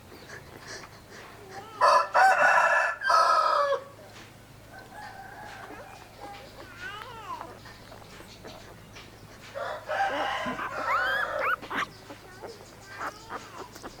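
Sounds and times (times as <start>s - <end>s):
rooster crowing: 1.8s - 3.9s, 4.7s - 6.0s, 9.6s - 11.8s
short chicken calls: 9.6s - 14.0s.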